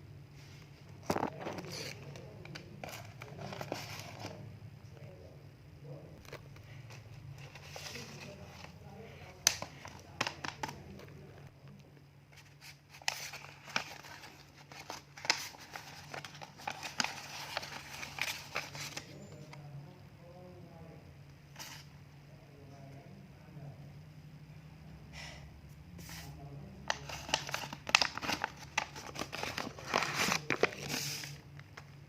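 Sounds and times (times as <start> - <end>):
crinkling and rustling: 0.4 - 4.4, 6.2 - 19.6, 26.8 - 32.0.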